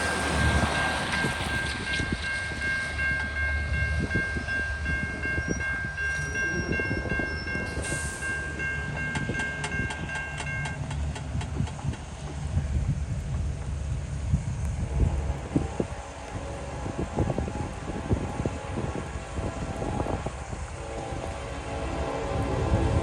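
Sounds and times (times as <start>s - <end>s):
low train rumble: 0.0s - 23.0s
wheels clicking over rail joints: 8.8s - 13.8s.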